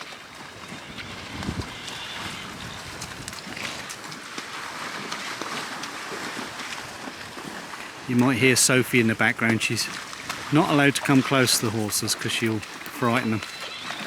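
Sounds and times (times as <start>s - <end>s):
ponies splashing in water: 0.0s - 14.0s
water washing: 0.0s - 14.0s
wind on microphone: 0.4s - 3.9s.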